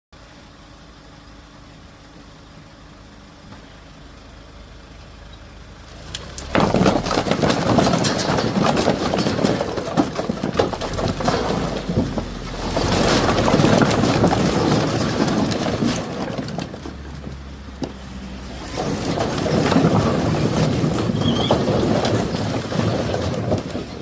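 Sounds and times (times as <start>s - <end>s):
low engine hum: 0.2s - 24.0s
firewood logs tumbling and knocking: 5.9s - 24.0s.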